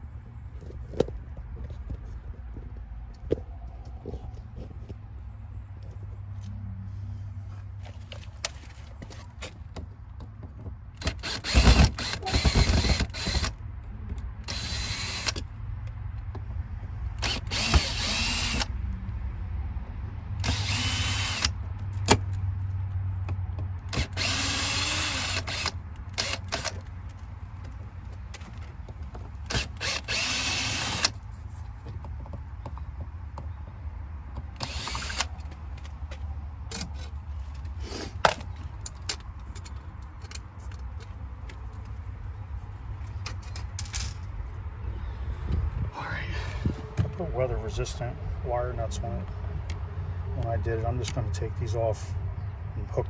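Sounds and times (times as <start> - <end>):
cordless drill whining: 11.0 - 13.6, 14.5 - 15.4, 17.2 - 18.7, 20.4 - 21.6, 23.9 - 26.8, 29.5 - 31.2, 34.6 - 35.3.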